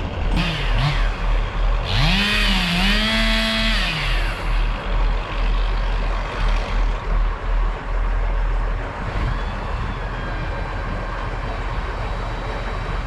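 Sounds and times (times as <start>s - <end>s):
chainsaw revving: 0.3s - 5.7s.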